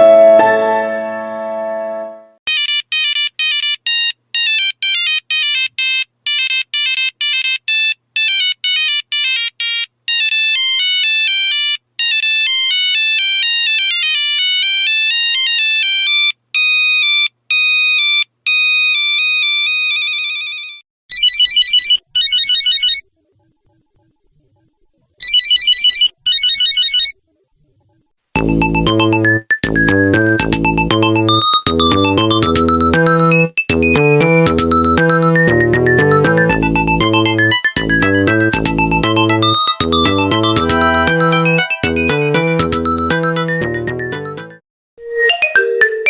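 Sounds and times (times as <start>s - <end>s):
piano-like ringtone tune: 0.0s - 2.4s, 28.4s - 46.0s
electronic beeping melody: 28.4s - 46.0s.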